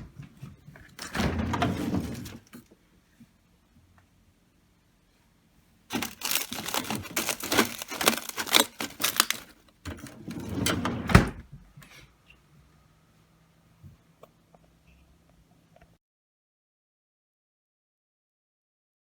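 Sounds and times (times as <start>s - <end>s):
hard objects clattering and rattling: 5.9s - 10.5s.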